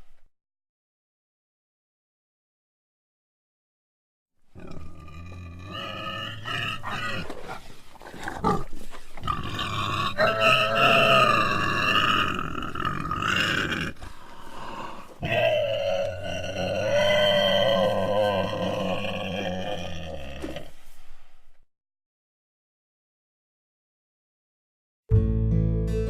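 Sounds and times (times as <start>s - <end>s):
pig squealing: 4.6s - 7.6s, 8.4s - 14.0s, 14.6s - 20.7s.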